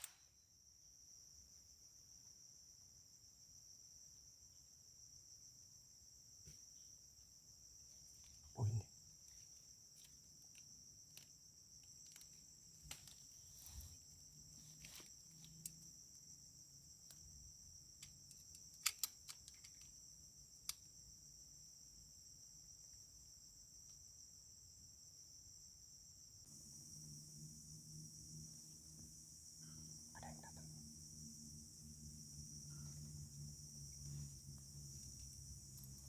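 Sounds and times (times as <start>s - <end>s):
crickets chirping: 0.0s - 36.0s
sharp clicks: 18.3s - 19.9s.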